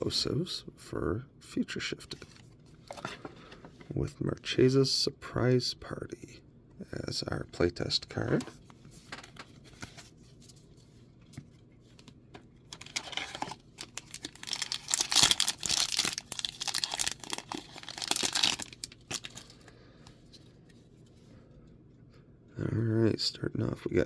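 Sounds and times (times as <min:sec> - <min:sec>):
plastic wrapper tearing and crinkling: 0:12.7 - 0:19.6.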